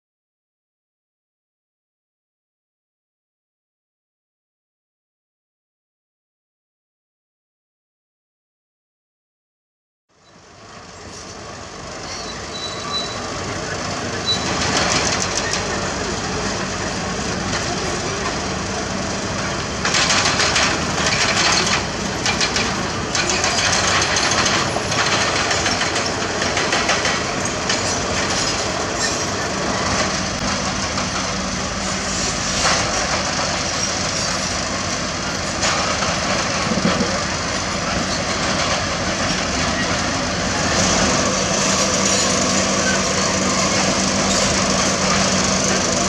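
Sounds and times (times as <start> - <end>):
heavy diesel machinery running: 10.2 - 46.0
metallic scraping and clanking: 37.9 - 46.0.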